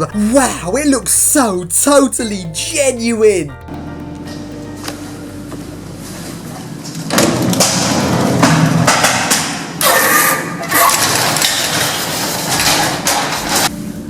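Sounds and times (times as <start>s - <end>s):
lift clattering and rumbling: 3.6s - 9.8s, 11.0s - 14.0s.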